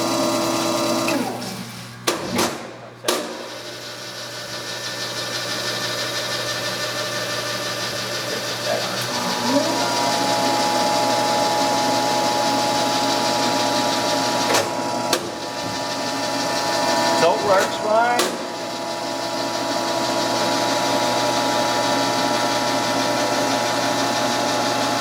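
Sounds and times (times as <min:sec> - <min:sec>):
electric motor whine: 0:05.3 - 0:25.0.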